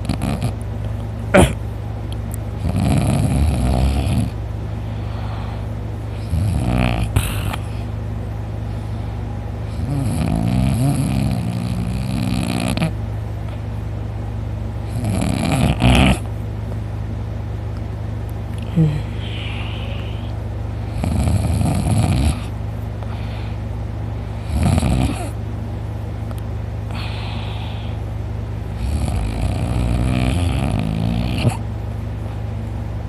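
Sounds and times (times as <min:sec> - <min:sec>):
man snoring loudly: 0:00.0 - 0:00.5, 0:02.6 - 0:04.4, 0:06.2 - 0:07.6, 0:09.7 - 0:12.9, 0:14.9 - 0:16.2, 0:20.9 - 0:22.5, 0:24.4 - 0:25.4, 0:28.8 - 0:31.6
steady low hum: 0:00.0 - 0:33.0.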